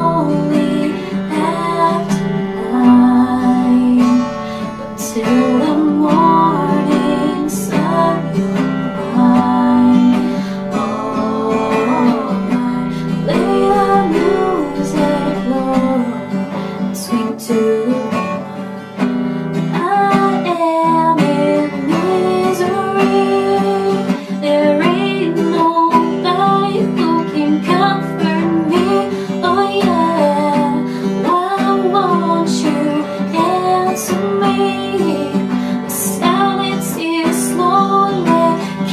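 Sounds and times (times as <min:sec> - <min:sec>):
wavering melody line: 0:00.0 - 0:16.9
acoustic guitar strumming: 0:00.0 - 0:38.9.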